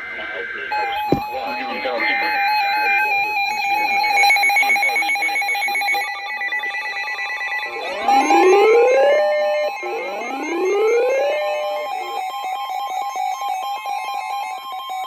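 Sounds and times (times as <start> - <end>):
electronic alert beeping tone: 0.7 - 12.0
rising siren-like sweeps: 7.5 - 12.6.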